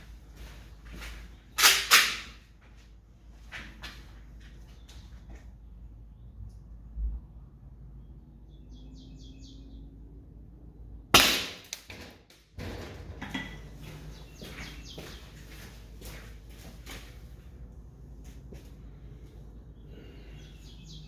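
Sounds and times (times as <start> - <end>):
gas gun shot: 11.2 - 12.1.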